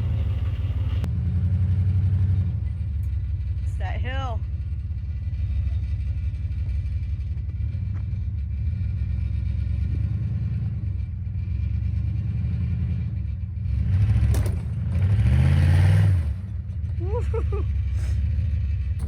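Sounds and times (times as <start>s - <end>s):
pickup truck engine revving: 0.0s - 1.1s, 13.7s - 17.0s.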